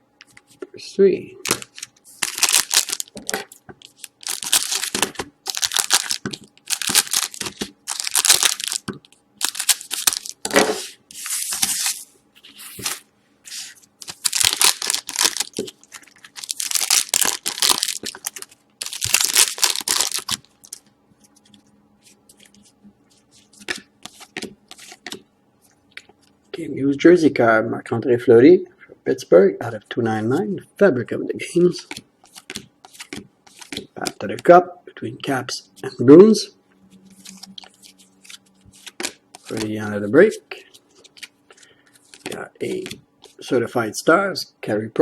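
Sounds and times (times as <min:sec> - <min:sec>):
foil wrappers ripping: 0:01.5 - 0:08.8, 0:09.4 - 0:10.5, 0:13.6 - 0:20.8.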